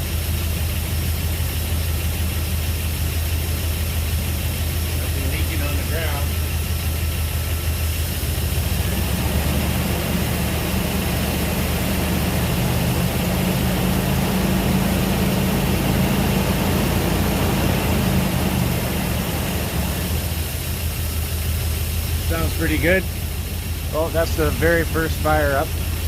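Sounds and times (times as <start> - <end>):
car engine idling with slight miss: 0.0 - 26.0.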